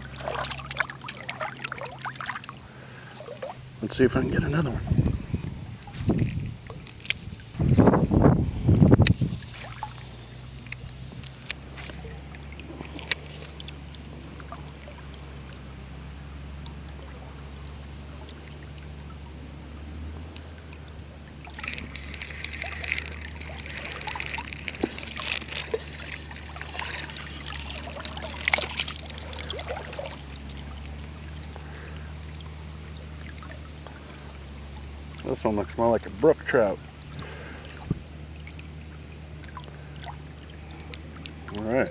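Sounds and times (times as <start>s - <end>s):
fish splashing at surface: 0.0s - 3.6s, 9.1s - 15.7s, 20.5s - 34.4s
river water rushing: 19.6s - 35.3s.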